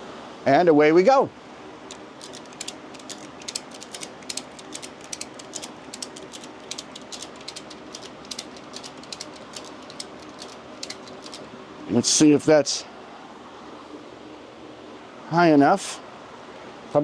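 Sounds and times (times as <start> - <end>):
hoist ratchet clicking: 1.9 - 11.5.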